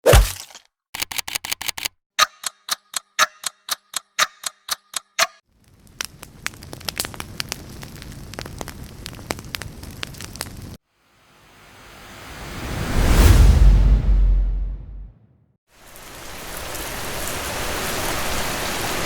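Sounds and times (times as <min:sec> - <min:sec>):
clock-like ticking: 0:01.0 - 0:05.4
sharp clicks: 0:01.0 - 0:05.4
crackle with sharp pops over hiss: 0:05.5 - 0:10.8.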